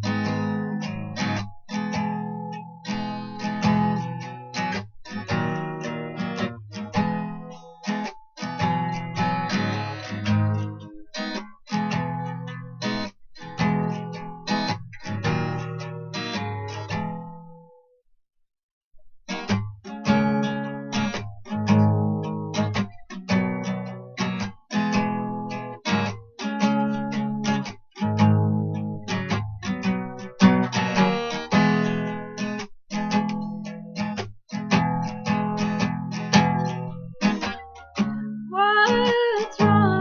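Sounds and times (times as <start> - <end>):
acoustic guitar strumming: 0.0 - 17.8, 19.3 - 40.0.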